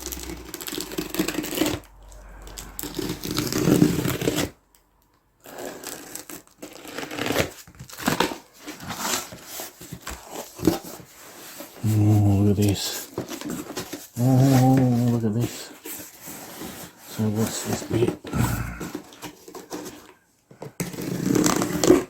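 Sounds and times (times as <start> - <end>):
cardboard box being torn open: 0.0 - 4.6, 5.4 - 11.1, 20.8 - 22.0.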